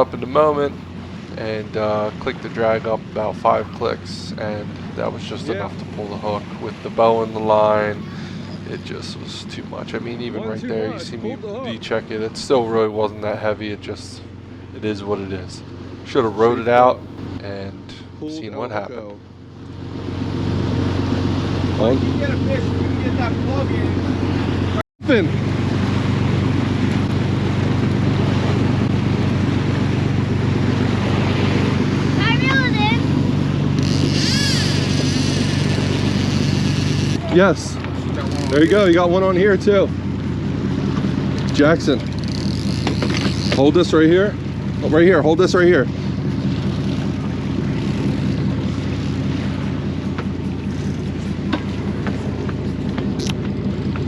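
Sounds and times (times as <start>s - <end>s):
boat engines droning: 0.0s - 54.0s
water rushing alongside: 0.0s - 54.0s
wind: 0.0s - 54.0s.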